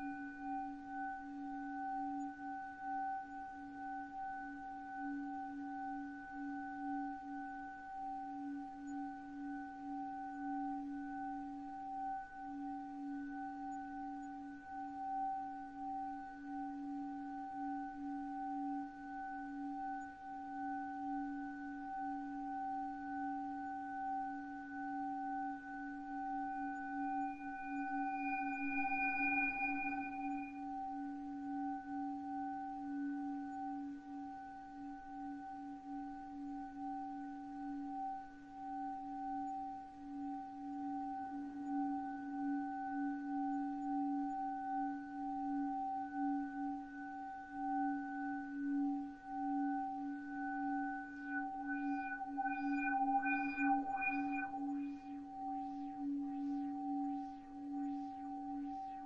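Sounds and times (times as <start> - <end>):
bell-like ringing drone: 0.0 - 59.0
high ringing tone: 18.0 - 34.2, 34.8 - 59.0.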